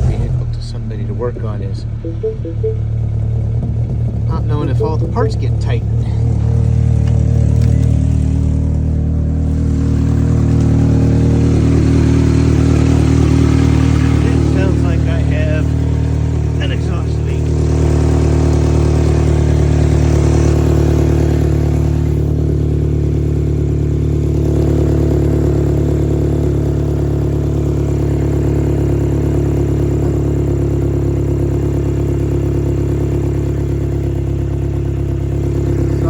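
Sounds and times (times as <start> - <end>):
car engine running with loud exhaust: 0.0 - 2.0, 2.7 - 36.0.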